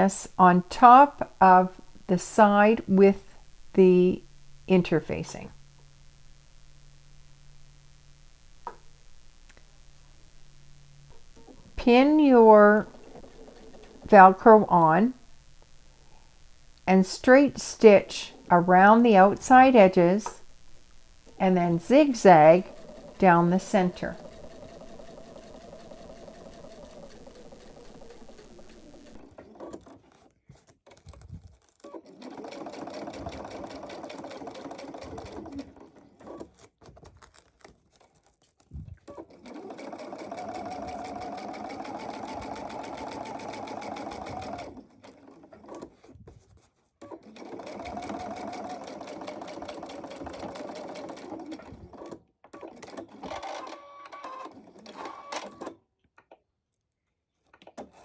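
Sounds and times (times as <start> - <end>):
electric sewing machine stitching: 11.4 - 14.9, 21.7 - 30.3, 31.6 - 36.8, 39.1 - 46.0, 47.1 - 55.8.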